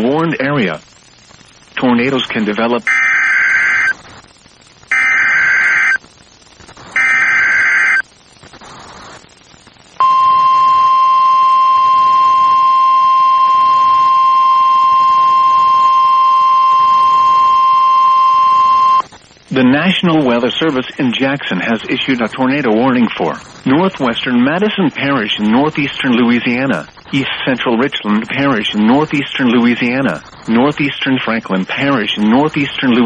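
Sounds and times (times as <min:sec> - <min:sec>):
digital data bursts: 0:00.2 - 0:33.0
steady warning alarm tone: 0:02.9 - 0:03.9, 0:04.9 - 0:06.0, 0:07.0 - 0:08.0, 0:10.0 - 0:19.0.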